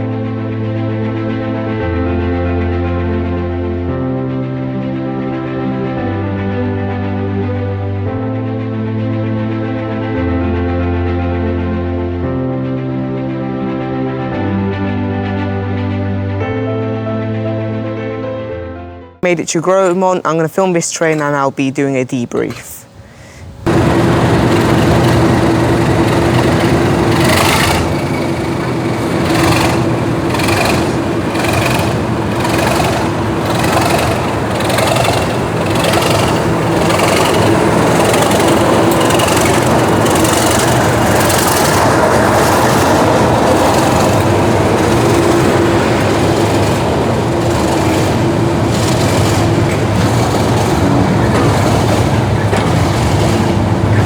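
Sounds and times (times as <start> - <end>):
steam train rumbling: 22.4 - 54.0.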